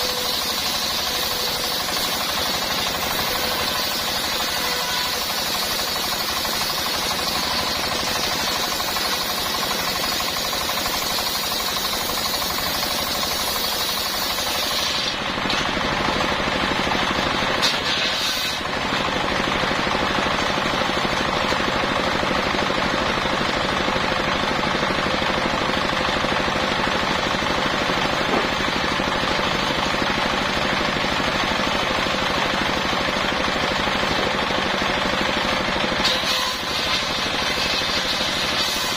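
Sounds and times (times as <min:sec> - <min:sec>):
circular saw cutting wood: 0:00.0 - 0:23.7, 0:34.8 - 0:38.9.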